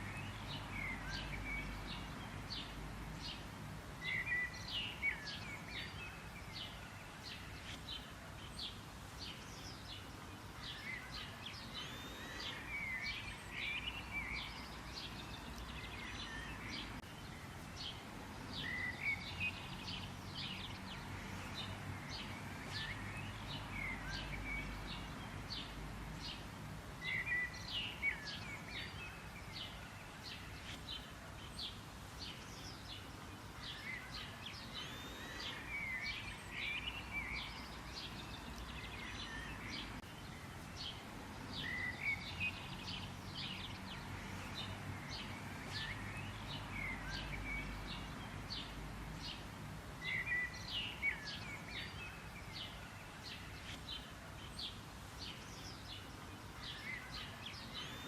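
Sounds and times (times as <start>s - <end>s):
songbirds chirping: 0.0s - 58.0s.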